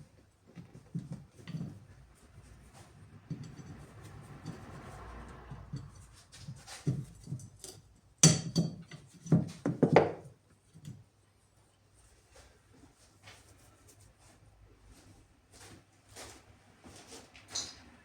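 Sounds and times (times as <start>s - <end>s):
hard objects knocking and clattering: 3.0s - 10.9s.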